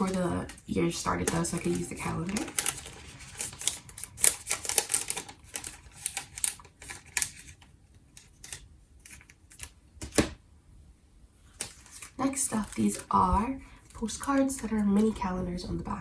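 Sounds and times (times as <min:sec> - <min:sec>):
cards and packaging clicking: 0:00.0 - 0:10.4, 0:11.5 - 0:13.2.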